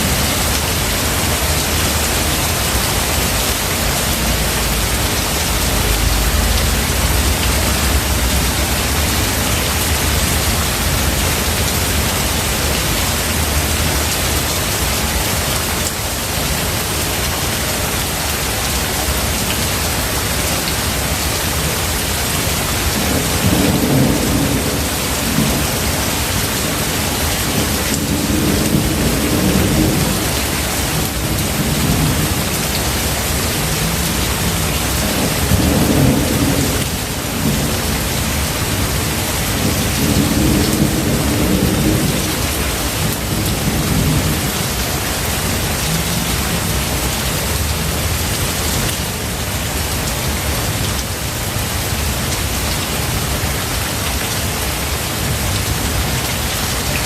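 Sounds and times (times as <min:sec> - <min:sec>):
rolling thunder: 0:00.0 - 0:13.9, 0:22.8 - 0:46.6
steady rain: 0:00.0 - 0:57.0.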